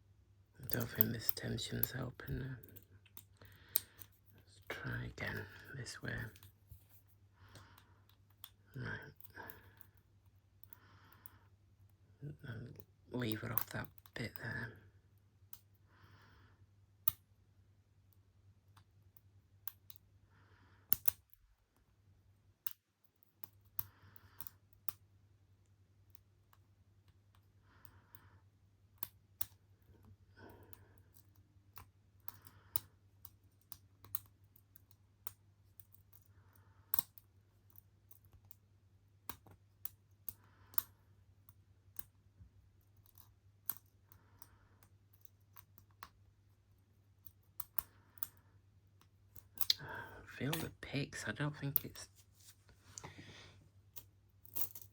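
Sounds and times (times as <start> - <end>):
lock pick metallic clicks: 20.9 - 21.4, 47.2 - 48.4, 53.9 - 54.9.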